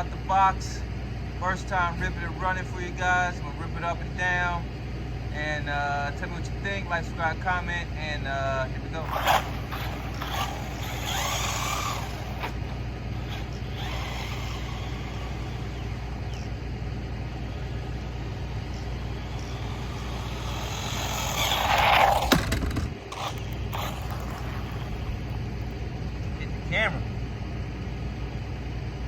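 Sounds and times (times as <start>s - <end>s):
steady low hum: 0.0s - 29.0s
rc car motor whine: 8.1s - 28.3s.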